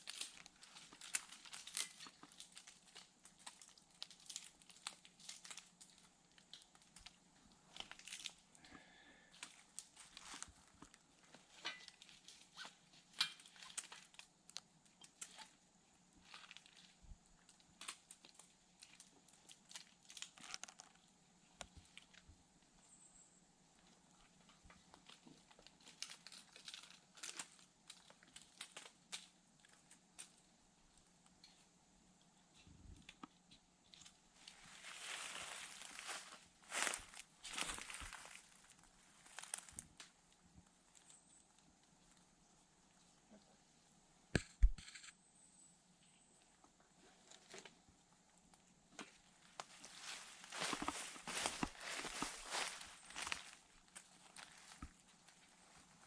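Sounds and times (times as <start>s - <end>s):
rustling and crinkling: 0.0s - 22.9s, 23.8s - 31.7s, 32.5s - 42.3s, 46.6s - 56.0s
faint steady hum: 0.0s - 56.0s.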